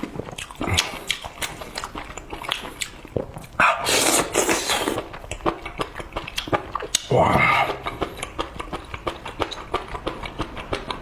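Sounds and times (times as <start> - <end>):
wet chewing clicks: 0.0 - 11.0
loud slurp: 3.1 - 5.2.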